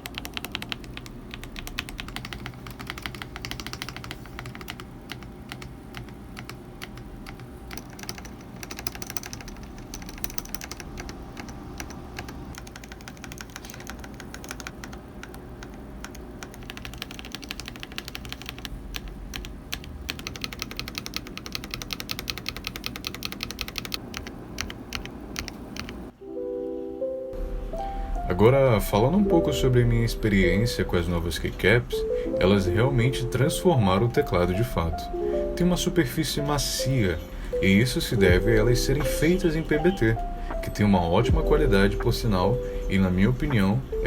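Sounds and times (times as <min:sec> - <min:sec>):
mechanical keyboard typing: 0:00.0 - 0:26.0.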